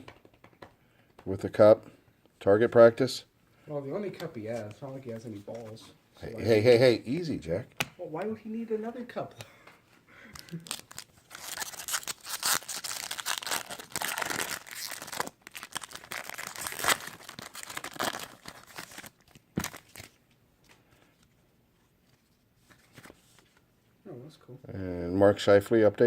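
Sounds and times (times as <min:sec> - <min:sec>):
wrapper tearing and crinkling: 0:10.4 - 0:20.2.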